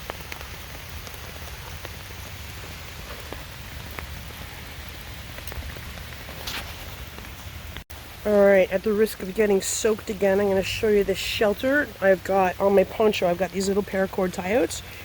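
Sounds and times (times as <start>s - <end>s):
rain on a poncho shelter: 0.0s - 15.0s.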